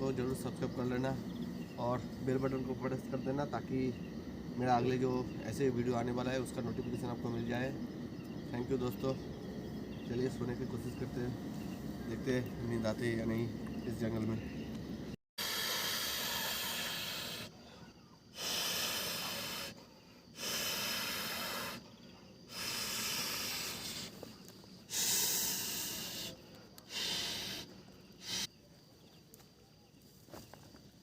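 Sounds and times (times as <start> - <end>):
heavy breathing: 15.4 - 28.5.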